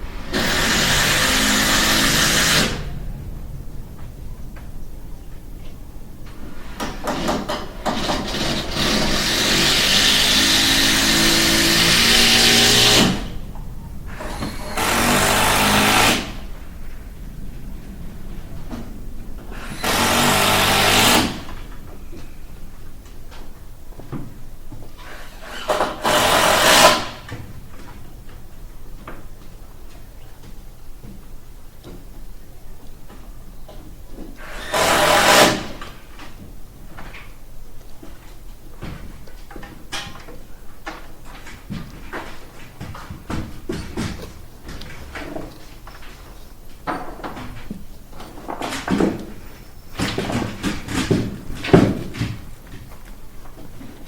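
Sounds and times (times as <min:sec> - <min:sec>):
loud burst of tool noise: 0:00.1 - 0:03.3, 0:06.3 - 0:17.0, 0:19.5 - 0:21.8, 0:25.0 - 0:27.4, 0:34.4 - 0:36.0
renovation knocks and thuds: 0:00.1 - 0:32.2, 0:38.0 - 0:54.0
light knocks and tool clatter: 0:36.2 - 0:54.0.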